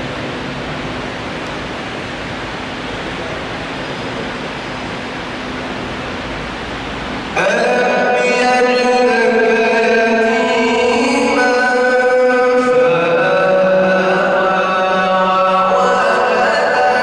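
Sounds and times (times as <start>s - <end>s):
man chanting melodically: 7.3s - 17.0s.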